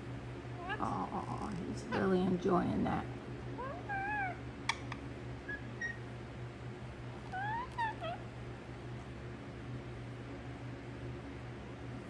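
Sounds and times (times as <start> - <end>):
parrot whistled calls: 3.6 - 6.1, 7.3 - 8.2.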